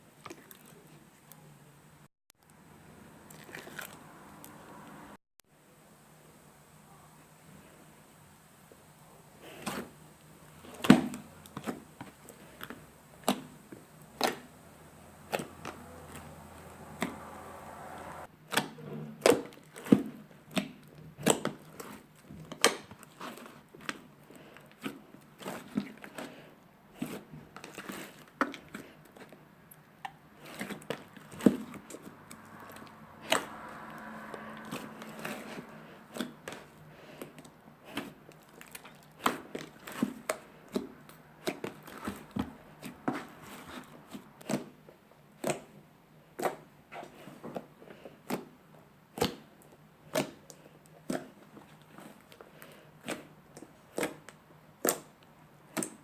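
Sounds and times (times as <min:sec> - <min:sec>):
slime squished by hand: 0:30.0 - 0:56.0.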